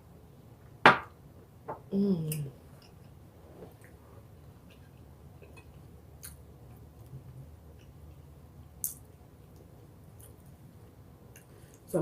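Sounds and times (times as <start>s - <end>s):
person chewing food: 2.8s - 11.9s.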